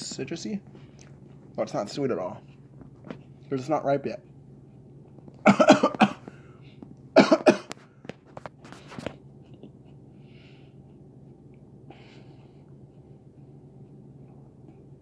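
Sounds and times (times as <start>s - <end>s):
man coughing: 5.4s - 6.3s, 7.2s - 7.8s.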